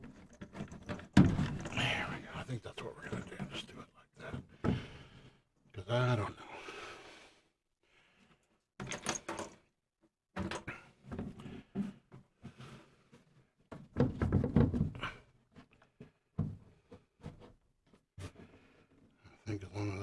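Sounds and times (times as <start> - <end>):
metal parts knocking and clunking: 0.0 - 2.0, 8.8 - 9.6.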